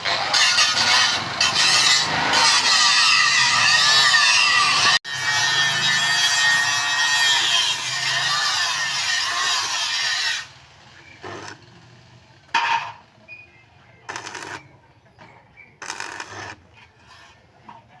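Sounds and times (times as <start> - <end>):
power tool cutting: 0.0 - 10.6.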